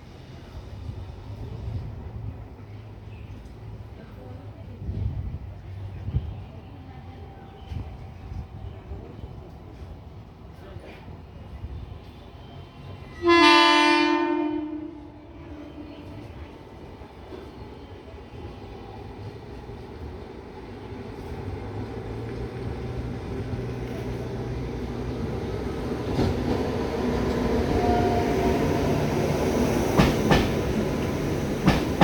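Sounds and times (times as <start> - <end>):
train running rumble: 3.4 - 32.0
train horn blast: 13.0 - 16.4, 27.7 - 28.8.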